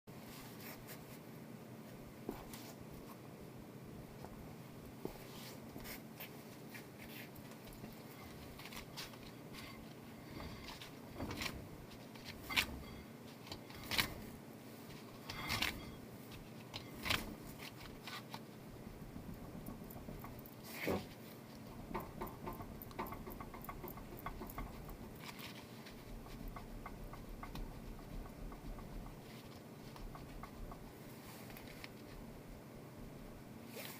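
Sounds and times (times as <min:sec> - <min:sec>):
low steady hum: 0:00.1 - 0:33.9
light clicks and knocks: 0:19.2 - 0:31.0.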